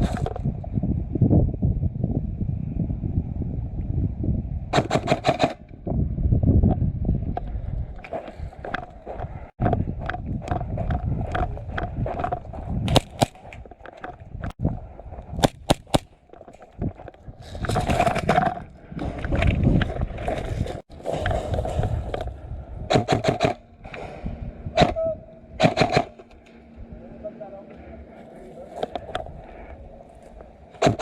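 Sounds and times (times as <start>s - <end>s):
airsoft gun shots: 4.7s - 5.6s, 12.9s - 13.4s, 15.4s - 16.1s, 22.9s - 23.6s, 25.6s - 26.2s.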